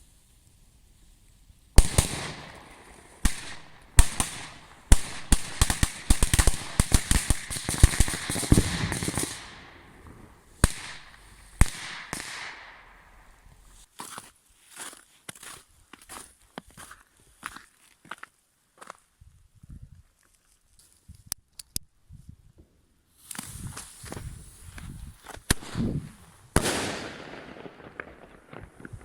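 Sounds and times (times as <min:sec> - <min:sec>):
firecrackers banging: 0:01.8 - 0:13.7, 0:25.5 - 0:29.0.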